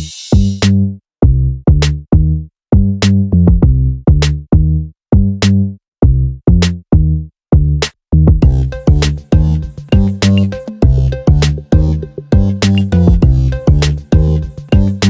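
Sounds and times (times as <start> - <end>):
electronic music drum-machine beat: 0.0 - 0.6, 8.4 - 15.0.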